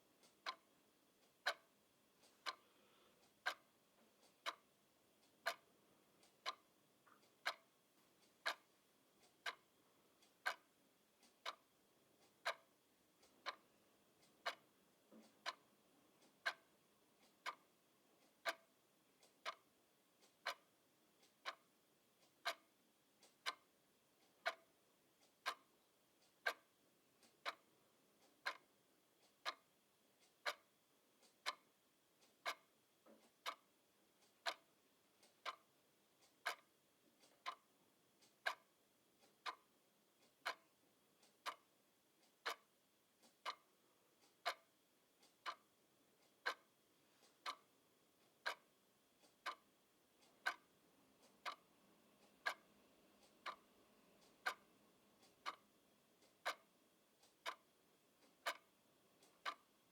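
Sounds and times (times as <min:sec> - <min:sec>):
clock ticking: 0:00.0 - 0:59.9.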